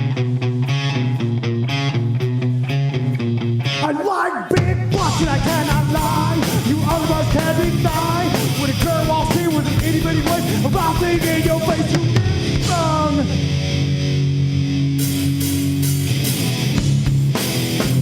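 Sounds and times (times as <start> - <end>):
chugging guitar and bass riff: 0.0 - 18.0
rock band playing live: 0.0 - 18.0
person singing: 3.8 - 13.5.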